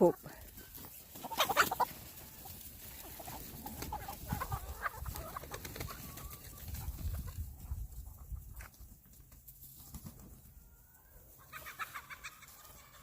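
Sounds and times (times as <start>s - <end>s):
chickens clucking: 0.0s - 13.0s
short chicken calls: 1.2s - 2.5s.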